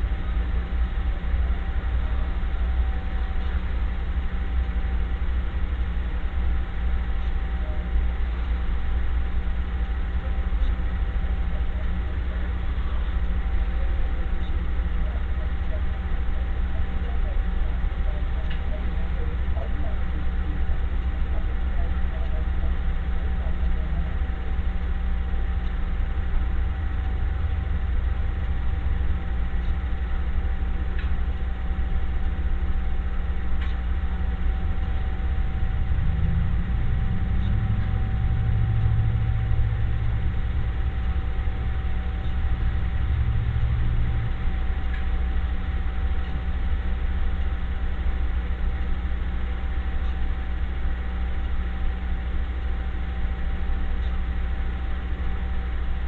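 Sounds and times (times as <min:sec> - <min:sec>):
deep hum: 0:00.0 - 0:56.0
faint constant tone: 0:00.0 - 0:56.0
low mechanical drone: 0:00.0 - 0:56.0.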